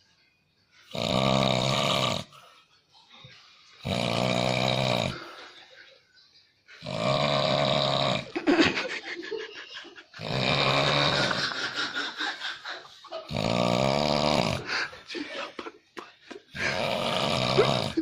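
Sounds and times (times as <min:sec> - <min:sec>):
person snoring heavily: 0:00.9 - 0:02.3, 0:03.8 - 0:05.2, 0:06.8 - 0:08.4, 0:10.2 - 0:11.8, 0:13.2 - 0:14.9, 0:16.6 - 0:18.0
quiet breathing: 0:14.6 - 0:16.8.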